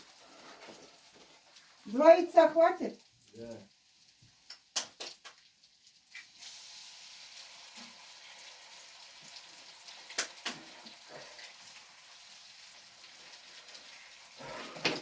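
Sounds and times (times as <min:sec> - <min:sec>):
eggs sizzling in frying pan: 0:00.0 - 0:15.0.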